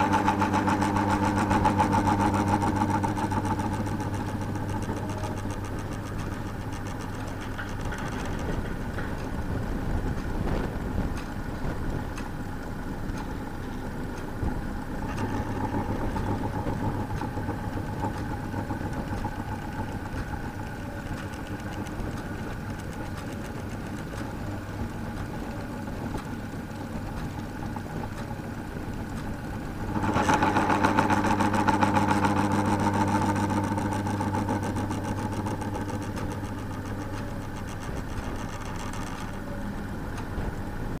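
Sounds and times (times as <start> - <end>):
electric fan motor hum: 0.0 - 41.0
fan blade scraping rub: 29.2 - 40.0.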